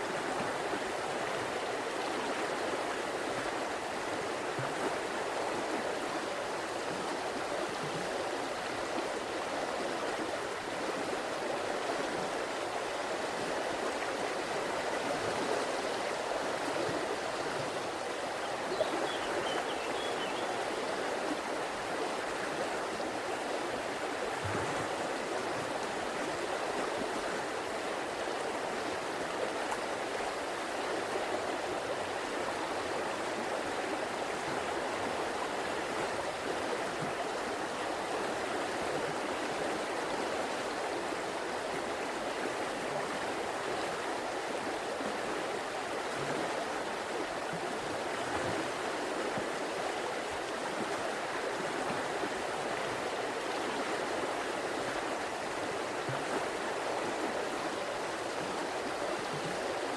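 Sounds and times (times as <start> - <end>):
river water flowing: 0.0 - 59.9.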